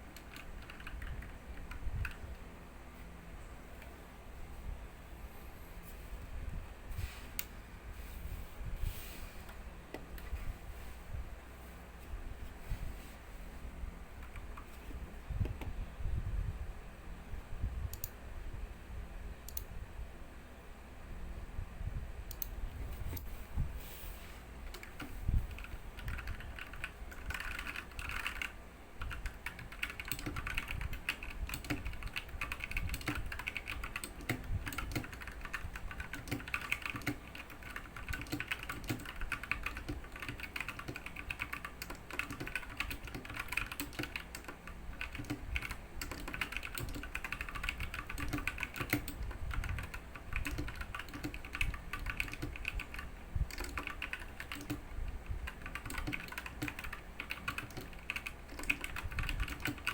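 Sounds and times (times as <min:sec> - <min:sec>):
fast mechanical keyboard typing: 0:00.0 - 0:02.4, 0:24.7 - 0:59.9.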